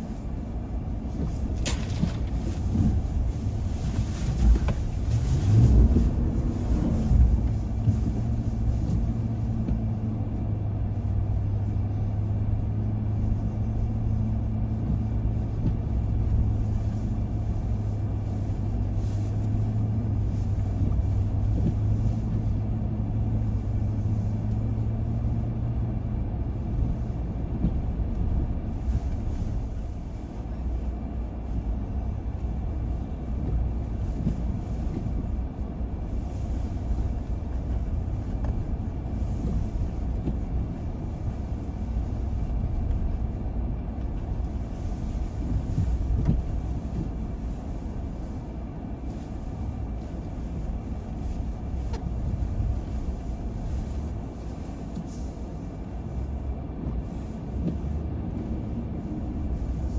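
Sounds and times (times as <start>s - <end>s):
car engine hum: 0.0s - 59.9s
tyre and road noise: 0.0s - 59.9s.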